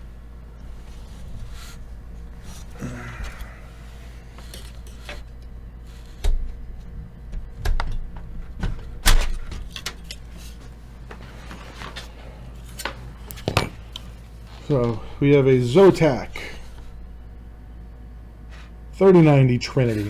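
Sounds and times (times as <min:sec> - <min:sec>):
steady low hum: 0:00.0 - 0:20.0
hardware clattering and clunking: 0:12.8 - 0:15.0.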